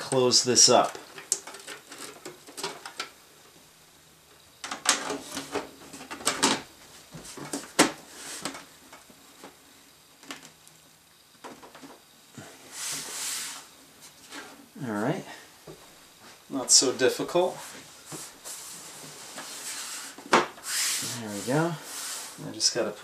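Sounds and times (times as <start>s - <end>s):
side panel sliding scrape: 18.2s - 22.4s.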